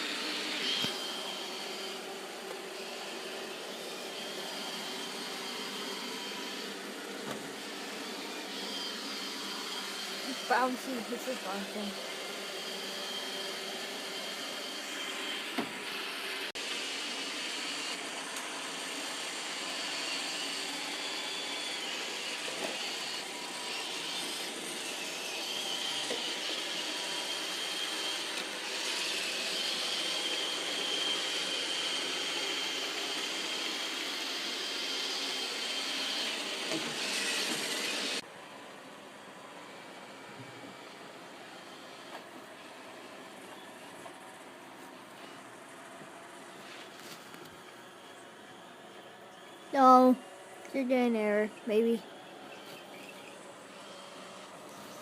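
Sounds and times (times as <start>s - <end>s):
robot vacuum whirring: 0.0s - 38.2s.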